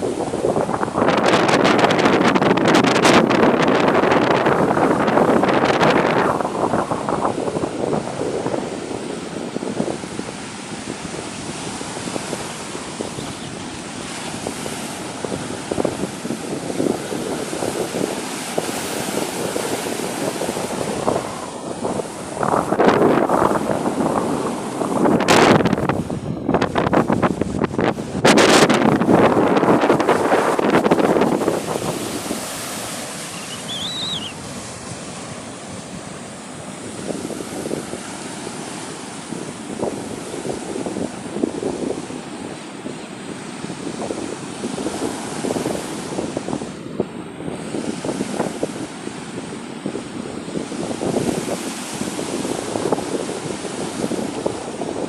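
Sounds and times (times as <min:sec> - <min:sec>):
sea waves washing: 0:00.0 - 0:55.0
wind buffeting microphone: 0:00.0 - 0:55.0
high chirp: 0:33.3 - 0:34.4.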